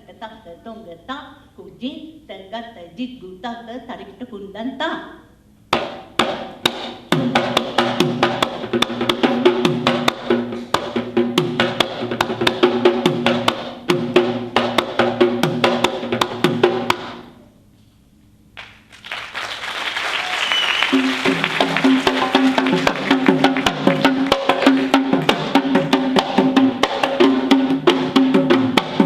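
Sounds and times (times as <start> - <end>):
fast drumming: 5.7 - 17.3, 19.1 - 29.0.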